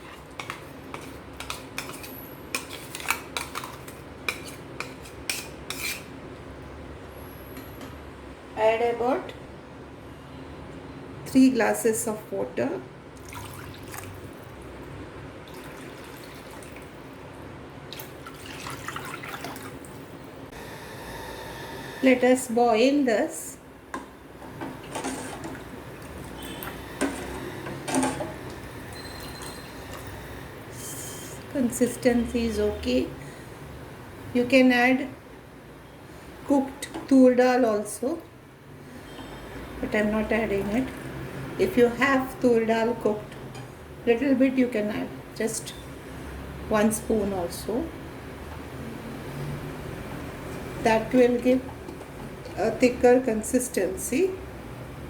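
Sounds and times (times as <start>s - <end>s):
spoon scraping: 0.0s - 6.1s
liquid sloshing in a pot: 13.2s - 17.2s, 17.9s - 20.2s, 24.6s - 30.2s.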